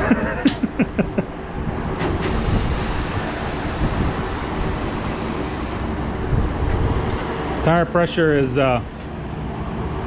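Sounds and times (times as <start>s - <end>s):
compressed air hissing into tire: 2.0s - 6.1s.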